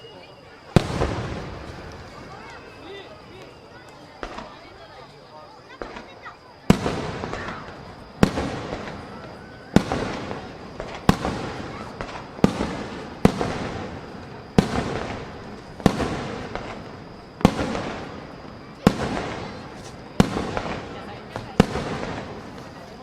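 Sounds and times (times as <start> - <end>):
firework shells bursting: 6.7 - 22.8.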